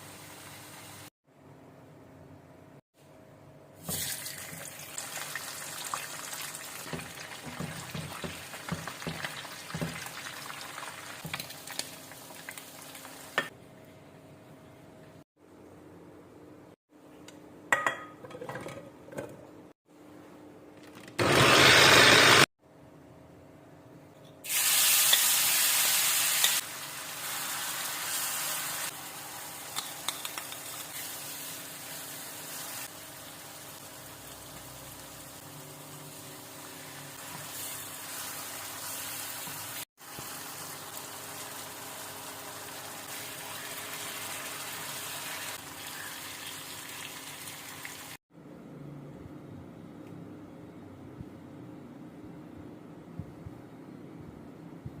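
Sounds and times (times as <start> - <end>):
food sizzling in hot oil: 3.8 - 13.5, 24.4 - 48.2.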